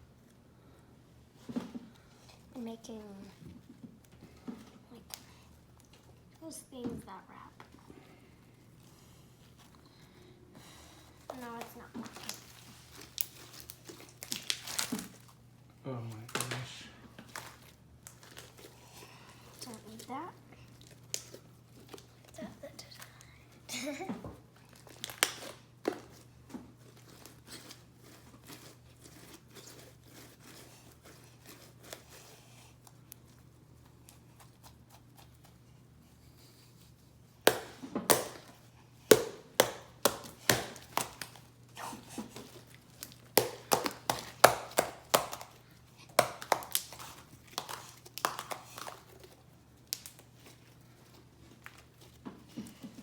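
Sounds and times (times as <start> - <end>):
slime crackling and popping: 11.3 - 15.4, 19.5 - 22.4, 24.6 - 25.7, 37.4 - 50.8.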